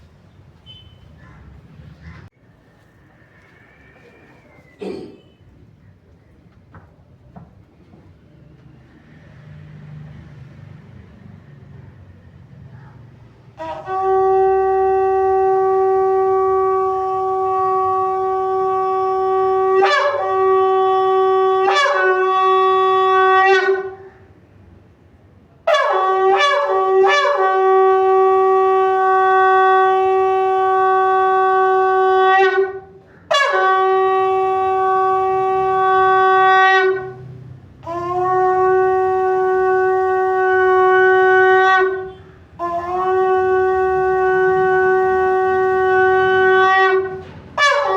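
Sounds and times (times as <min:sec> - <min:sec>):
shofar blasts: 0:13.6 - 0:24.2, 0:25.6 - 0:47.9.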